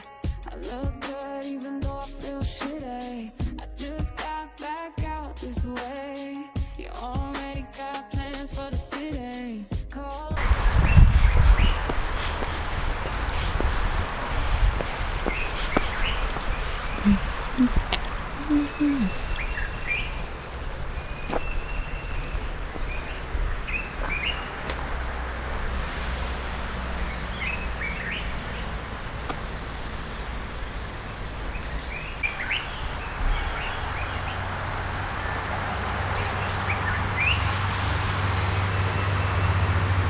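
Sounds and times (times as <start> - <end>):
birds chirping: 10.4 - 40.0
low background rumble: 10.4 - 40.0.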